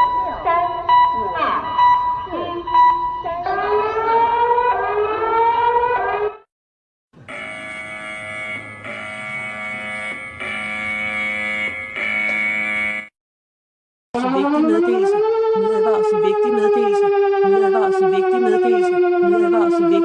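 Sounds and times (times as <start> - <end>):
rising wailing alert tone: 7.2 - 13.1
buzzing alarm: 7.2 - 13.2, 14.2 - 20.0.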